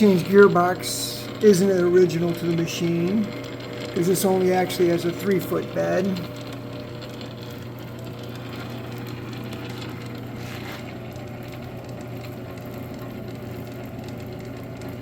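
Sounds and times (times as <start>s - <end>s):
gear train whirring: 0.0s - 15.0s
lathe motor humming: 0.0s - 15.0s.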